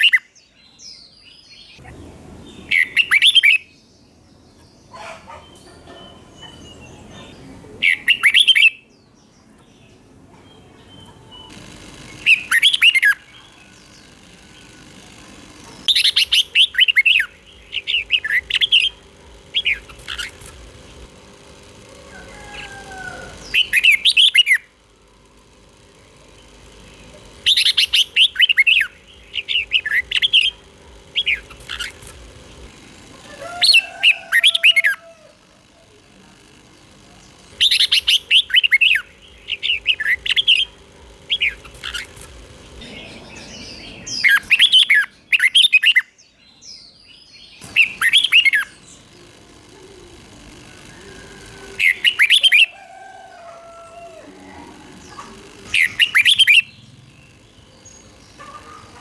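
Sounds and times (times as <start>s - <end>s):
bird singing warbled notes: 50.7s - 52.8s, 54.3s - 59.0s.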